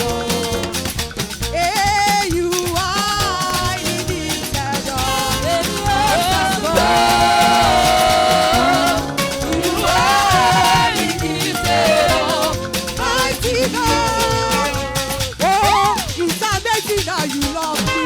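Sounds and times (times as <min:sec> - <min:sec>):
drums and shakers beat: 0:00.0 - 0:18.0
upbeat praise band music: 0:00.0 - 0:18.0.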